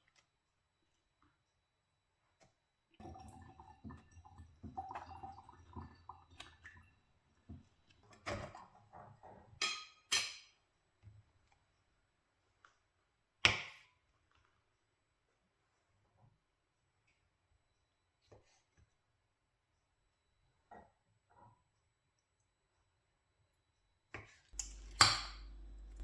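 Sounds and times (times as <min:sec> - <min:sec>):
cookware and utensils being moved: 0:24.6 - 0:26.0.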